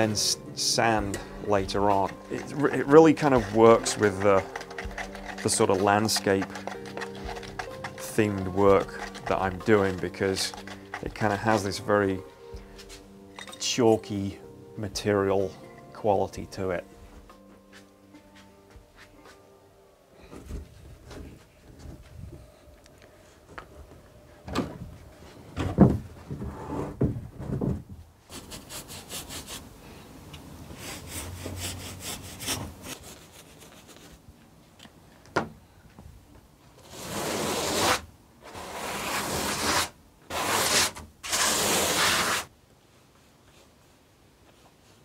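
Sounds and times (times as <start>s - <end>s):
hand sanding strokes: 1.7s - 11.6s, 28.3s - 29.7s, 30.7s - 34.1s, 36.8s - 42.5s.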